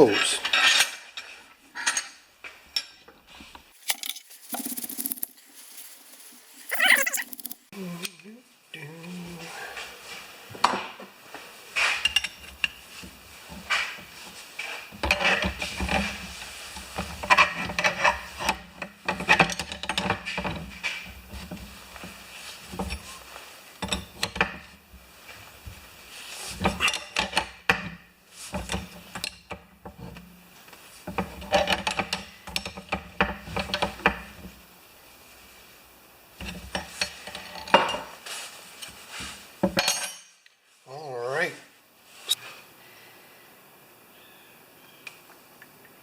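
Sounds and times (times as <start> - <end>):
metal fittings scraping and clinking: 3.8 - 7.7.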